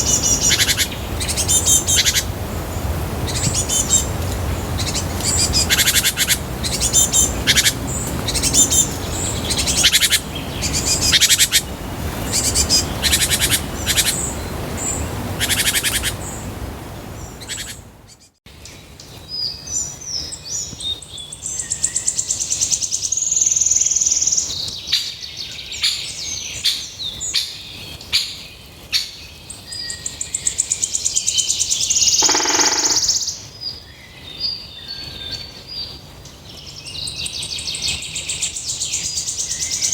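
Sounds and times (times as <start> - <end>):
songbirds trilling and chirping: 0.0 - 39.9.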